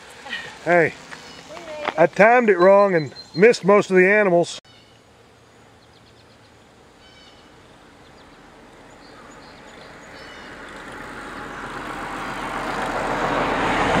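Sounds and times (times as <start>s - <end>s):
vehicle road noise: 0.0s - 14.0s
faint bird chirps: 4.7s - 10.6s.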